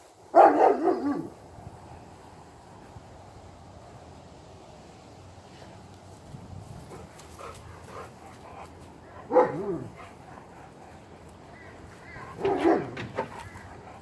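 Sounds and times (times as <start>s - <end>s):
puppy barking: 0.3s - 1.3s, 9.3s - 10.0s, 12.4s - 13.1s.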